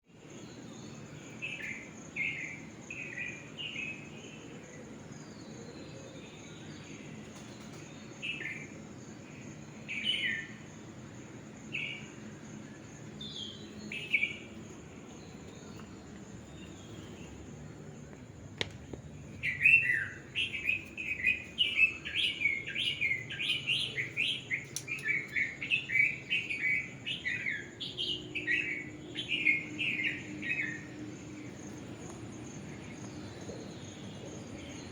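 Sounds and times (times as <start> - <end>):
small birds chirping: 11.6 - 34.9.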